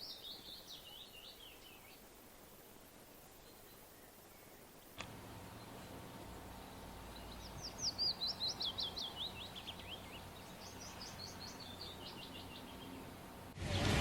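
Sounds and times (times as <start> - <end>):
faint steady hiss: 0.0 - 14.0
songbird trilling: 5.4 - 13.3.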